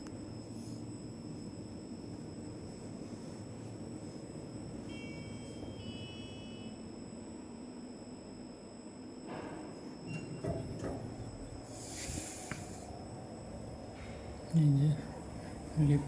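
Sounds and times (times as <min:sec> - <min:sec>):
low machinery hum: 0:00.0 - 0:16.0
faint electronic beep: 0:04.8 - 0:06.9.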